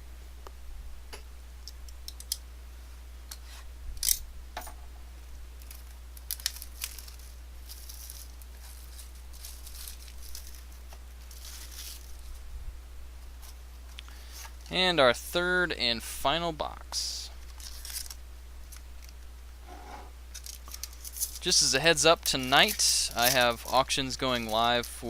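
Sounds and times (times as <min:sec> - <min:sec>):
steady low hum: 0:00.0 - 0:25.0
plastic wrapper crinkling: 0:05.6 - 0:12.4, 0:17.4 - 0:19.3, 0:20.3 - 0:25.0.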